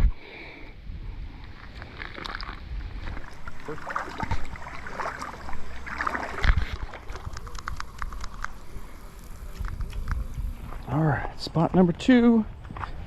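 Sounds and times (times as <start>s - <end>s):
water splashing and sloshing: 1.2s - 11.0s.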